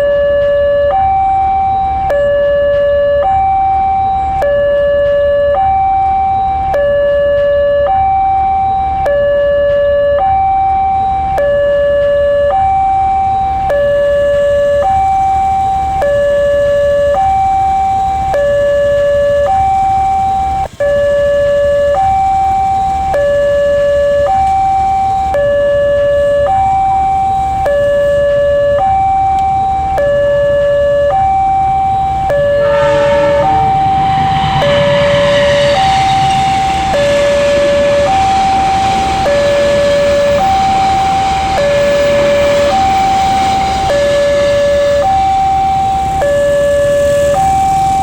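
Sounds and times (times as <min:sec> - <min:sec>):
two-tone level-crossing alarm: 0:00.0 - 0:48.0
low rumble: 0:31.6 - 0:47.1.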